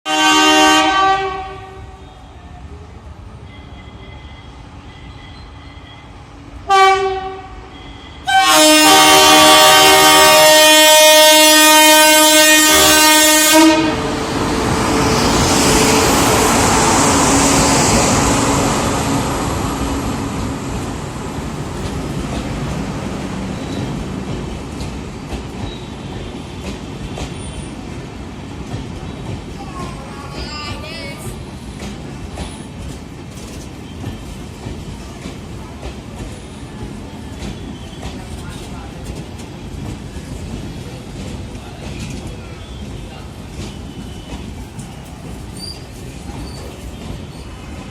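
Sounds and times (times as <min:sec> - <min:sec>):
train horn blasts: 0:00.1 - 0:02.3, 0:06.6 - 0:14.2
train rumbling on rails: 0:00.1 - 0:47.9.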